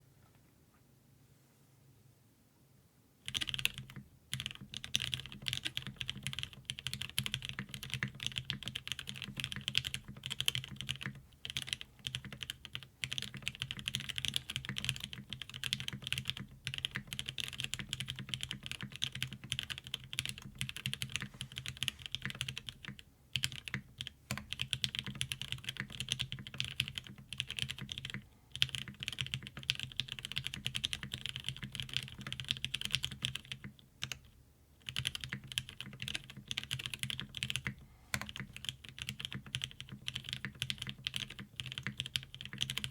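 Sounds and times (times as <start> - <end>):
mechanical keyboard typing: 3.3 - 42.9.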